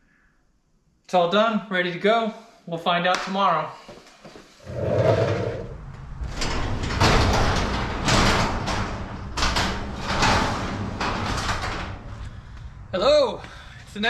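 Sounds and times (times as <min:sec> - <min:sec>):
door sliding along its track: 0:04.6 - 0:12.3
steady low hum: 0:04.7 - 0:14.0.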